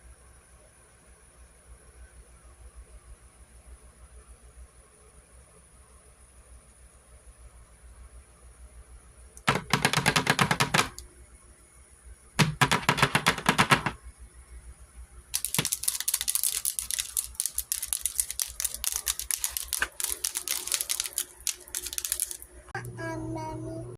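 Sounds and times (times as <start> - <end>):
fingernails tapping on hard surface: 9.4 - 11.0, 12.4 - 14.0.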